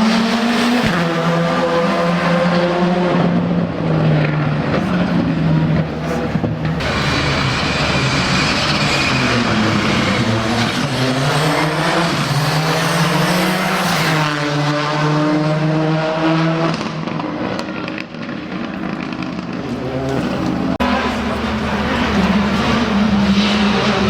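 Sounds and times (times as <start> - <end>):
rally car engine revving: 0.0 - 24.0.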